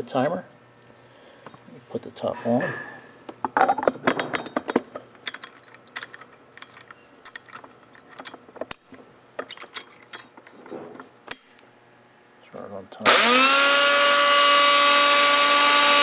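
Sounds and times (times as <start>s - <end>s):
metallic clinks and clicks: 4.2s - 10.3s.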